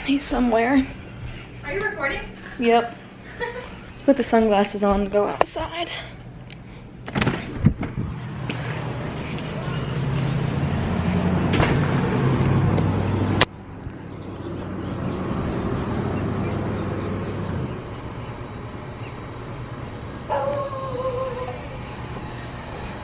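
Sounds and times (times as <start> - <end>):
motor humming: 7.8 - 23.0.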